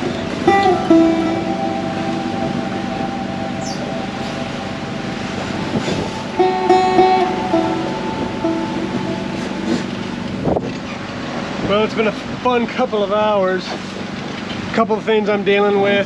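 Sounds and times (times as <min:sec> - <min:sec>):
guitar background music: 0:00.0 - 0:11.6.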